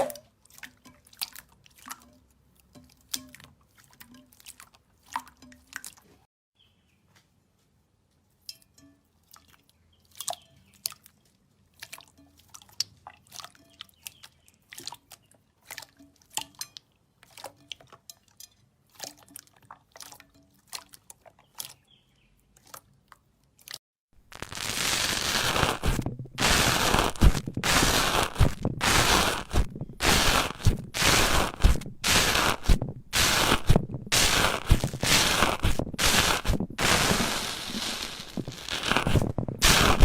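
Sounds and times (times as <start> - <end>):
loud dense slime crackling: 24.2 - 40.0
slime crackling and popping: 24.2 - 40.0.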